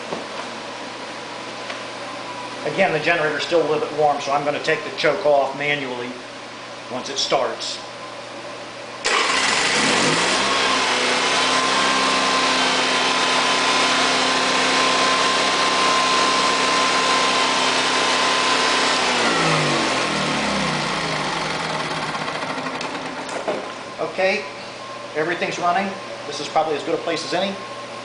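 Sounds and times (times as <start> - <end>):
generator engine running: 9.0 - 28.0.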